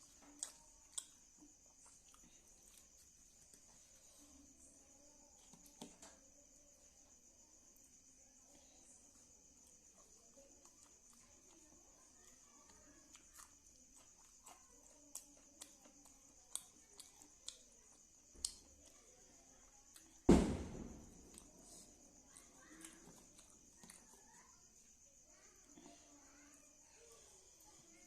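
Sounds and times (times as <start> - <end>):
chewing smacks and clicks: 0.1 - 3.7, 12.3 - 19.0, 22.3 - 24.5
loud thump: 20.3 - 21.2.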